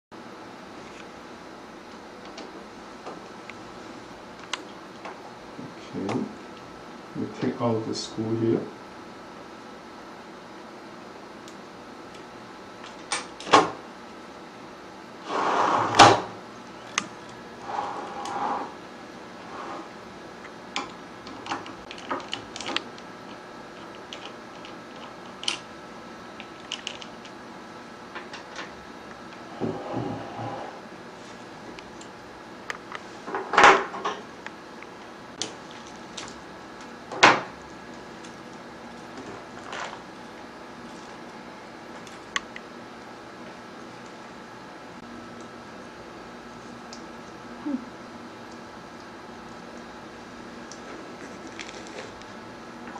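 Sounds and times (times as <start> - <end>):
sliding scrape: 15.2 - 16.0, 17.6 - 18.8.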